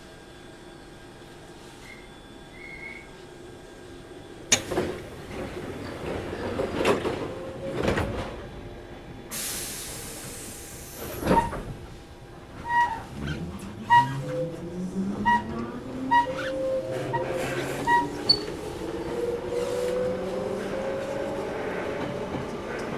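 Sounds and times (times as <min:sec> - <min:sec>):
train clunks: 0:04.4 - 0:22.9
air hiss: 0:09.3 - 0:11.2.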